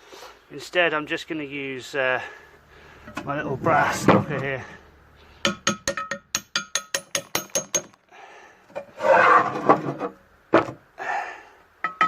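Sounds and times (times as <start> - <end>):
rough scraping rub: 8.8 - 10.2.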